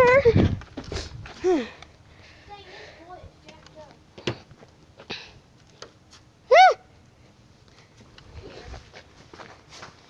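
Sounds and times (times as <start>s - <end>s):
high-pitched yelp: 6.5s - 6.9s.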